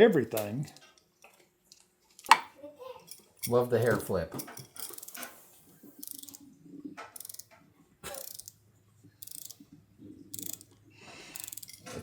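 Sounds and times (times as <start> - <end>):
ratchet wrench clicking: 4.8 - 5.2, 6.0 - 6.4, 7.2 - 7.5, 8.1 - 8.6, 9.2 - 9.6, 10.3 - 12.0.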